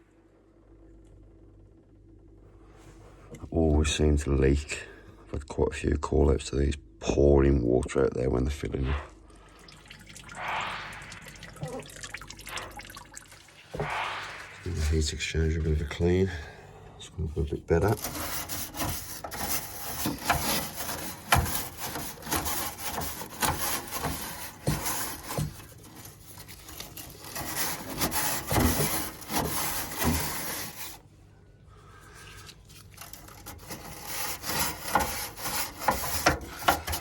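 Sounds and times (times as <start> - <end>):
brush scraping heat exchanger: 17.1 - 31.0, 32.2 - 37.0.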